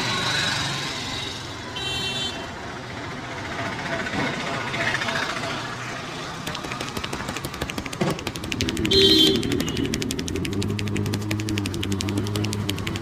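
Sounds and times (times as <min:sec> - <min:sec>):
hands slapping a head: 0:06.4 - 0:13.0
short high horn toot: 0:08.9 - 0:09.5.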